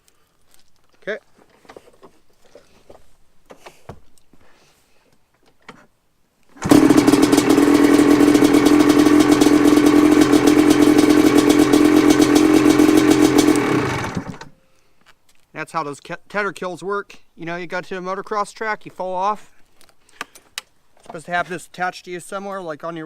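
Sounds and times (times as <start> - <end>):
two-stroke engine running: 6.6 - 14.5.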